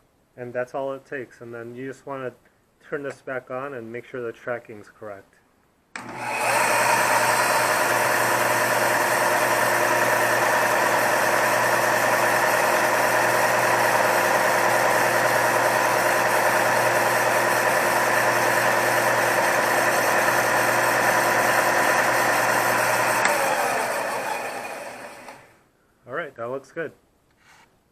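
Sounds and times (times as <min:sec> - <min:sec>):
belt sander running: 0:06.0 - 0:25.6.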